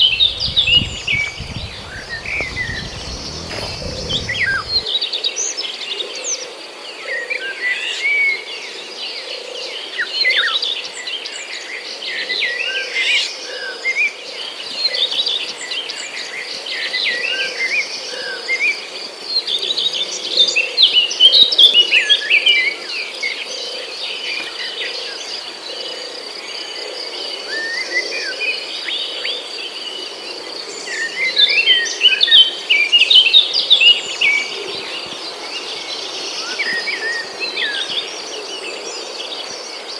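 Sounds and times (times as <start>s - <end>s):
birds chirping: 0.0s - 4.8s.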